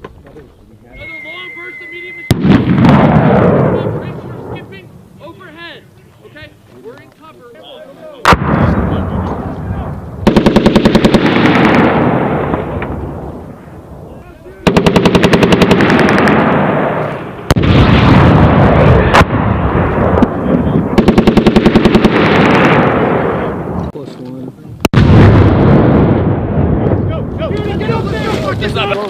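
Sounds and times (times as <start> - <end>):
rolling gunshot echo: 2.3 - 4.6, 8.2 - 13.7
single heavy gunshots: 2.3 - 4.6, 8.2 - 13.3, 14.6 - 23.8
automatic gunfire bursts: 10.2 - 12.1, 14.6 - 16.8, 21.0 - 22.8.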